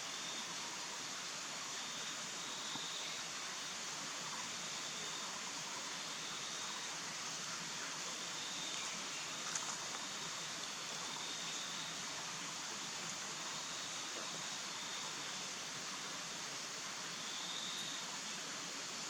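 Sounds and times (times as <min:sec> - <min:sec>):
steady hiss: 0:00.0 - 0:19.0
faint high steady tone: 0:08.1 - 0:12.2, 0:17.1 - 0:18.4.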